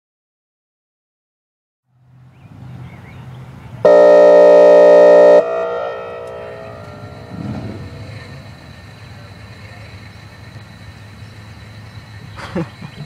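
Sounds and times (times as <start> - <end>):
siren air horn blast: 3.8 - 8.5.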